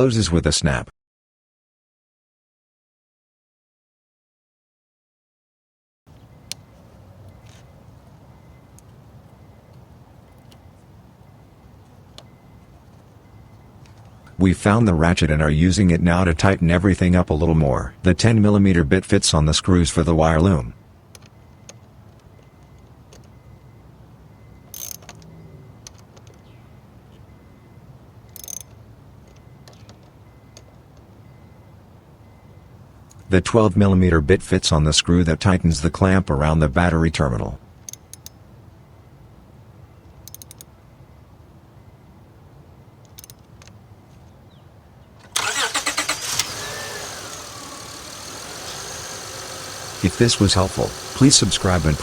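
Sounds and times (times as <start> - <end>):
hand ratchet clicking: 24.7 - 25.2, 28.3 - 29.4, 45.5 - 52.0
car engine cranking and idling: 45.2 - 52.0.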